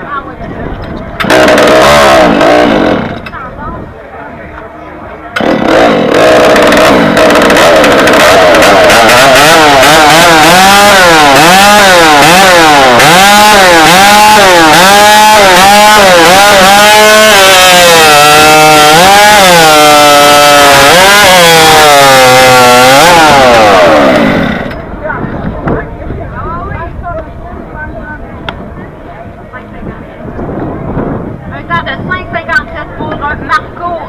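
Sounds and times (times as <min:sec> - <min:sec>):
chainsaw cutting through log: 0:01.2 - 0:03.3, 0:05.4 - 0:24.9.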